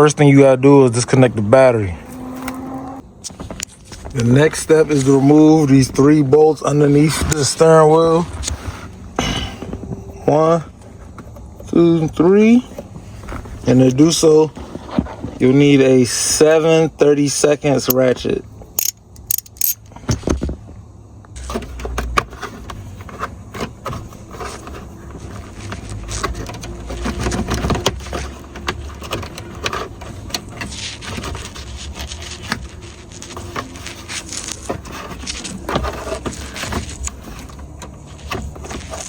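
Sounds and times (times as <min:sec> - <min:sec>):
ratchet on bolts: 0:18.8 - 0:19.8.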